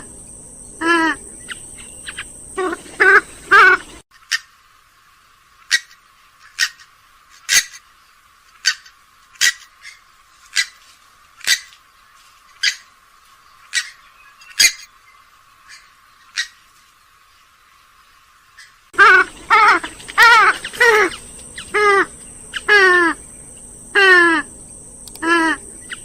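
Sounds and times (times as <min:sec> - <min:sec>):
swamphen short sharp calls: 0:00.8 - 0:04.5, 0:18.6 - 0:24.5, 0:25.2 - 0:26.0.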